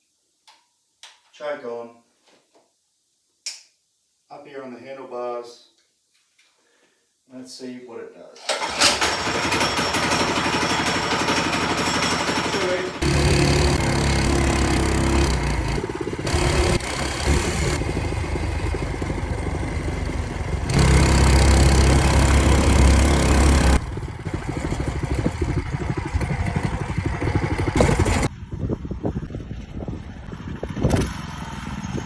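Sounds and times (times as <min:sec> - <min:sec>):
small engine revving: 0:11.4 - 0:28.3.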